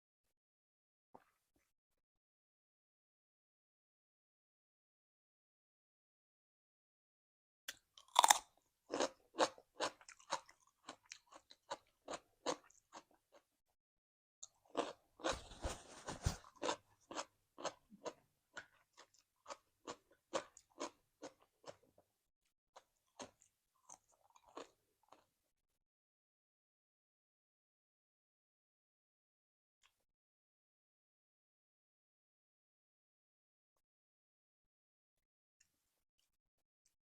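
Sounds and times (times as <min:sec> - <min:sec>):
chewing crunchy vegetables: 0:07.7 - 0:13.5, 0:14.4 - 0:22.1, 0:22.8 - 0:25.3.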